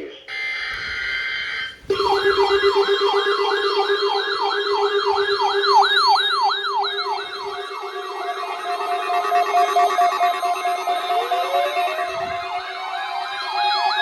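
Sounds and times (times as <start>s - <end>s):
siren-like alarm wail: 0.3s - 14.0s
warbling data tones: 0.3s - 14.0s
steady low tone: 1.8s - 14.0s.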